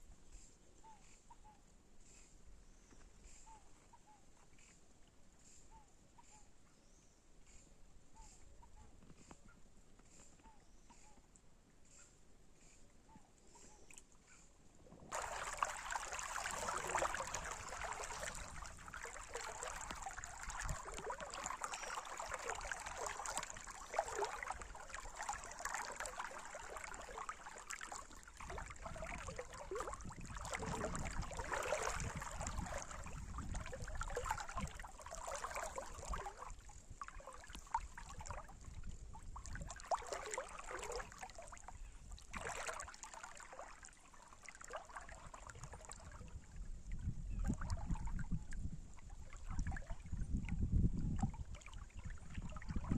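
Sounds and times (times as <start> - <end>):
river water flowing: 15.1 - 38.4, 39.4 - 46.1.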